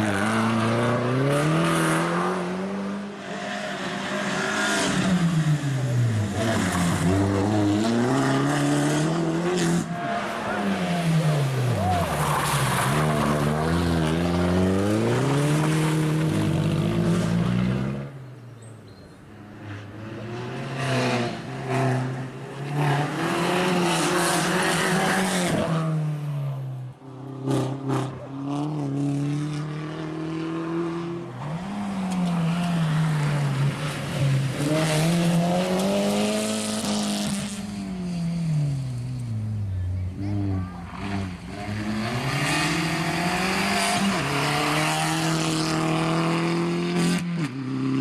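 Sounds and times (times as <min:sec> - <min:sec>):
car engine revving hard: 0:27.5 - 0:48.0.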